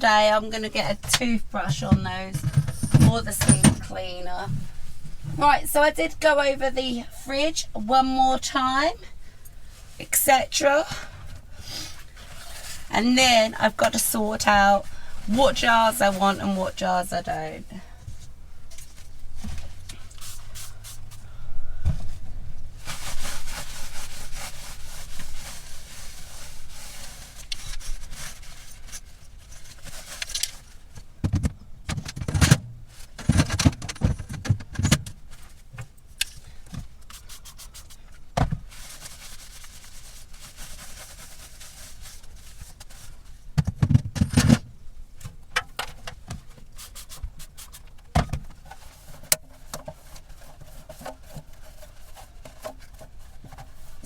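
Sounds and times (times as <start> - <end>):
rubbing and scraping: 11.8 - 31.1, 36.9 - 44.7, 45.9 - 54.0.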